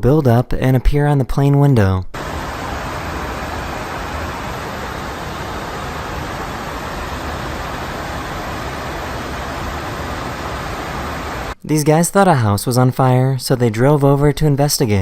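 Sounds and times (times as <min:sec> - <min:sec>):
aircraft cabin airflow and engine: 0:02.2 - 0:11.6.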